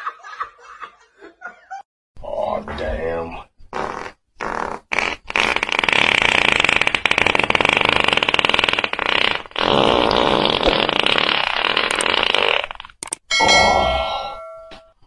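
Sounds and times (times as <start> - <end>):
dog farting: 3.7 - 13.0.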